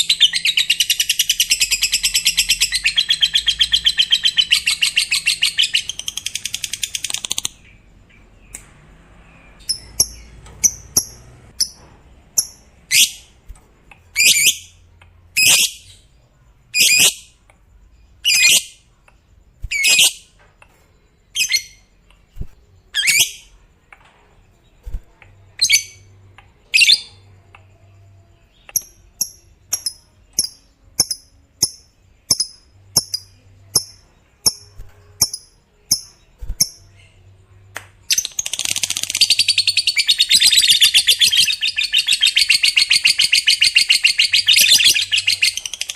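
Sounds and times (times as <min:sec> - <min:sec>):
soft high bird chirps: 0:00.0 - 0:45.9
shrill bird calls: 0:18.2 - 0:18.8, 0:22.9 - 0:23.6, 0:38.4 - 0:45.9.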